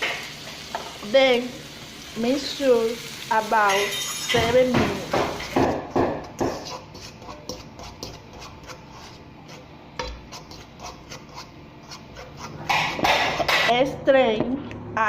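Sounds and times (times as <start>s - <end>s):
utensil scraping a skillet: 5.2s - 13.8s.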